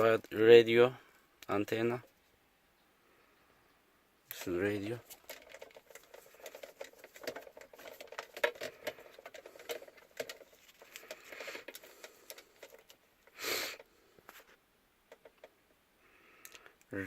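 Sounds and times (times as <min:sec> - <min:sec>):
scratchy rustling: 0:04.4 - 0:14.6
plastic connectors clicking: 0:16.4 - 0:16.9.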